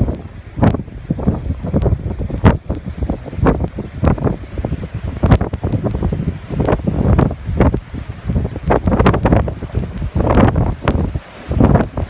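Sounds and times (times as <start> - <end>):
sea waves: 0.0 - 12.0
strong wind buffeting microphone: 0.0 - 12.0.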